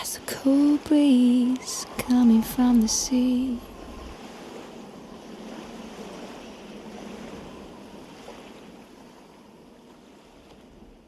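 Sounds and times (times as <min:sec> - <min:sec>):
ocean surf: 0:00.0 - 0:11.0
wind rushing: 0:01.4 - 0:09.1.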